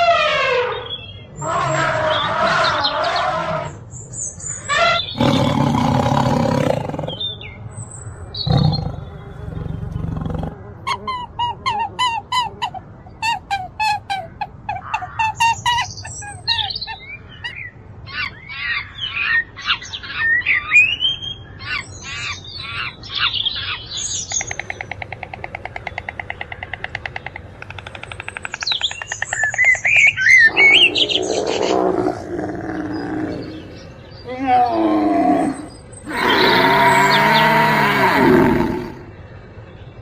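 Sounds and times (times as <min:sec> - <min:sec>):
harsh low animal call: 0:30.5 - 0:39.2.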